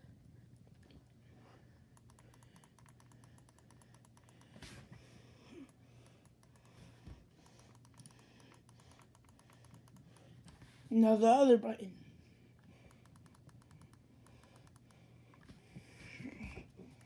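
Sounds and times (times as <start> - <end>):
rapid mouse button clicking: 2.0 - 4.7, 5.6 - 10.6, 12.8 - 15.0.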